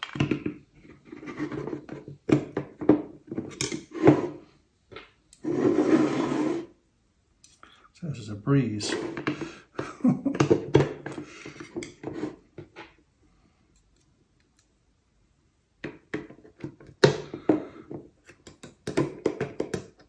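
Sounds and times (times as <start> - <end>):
metal forceps clicking and tapping: 18.3 - 20.0.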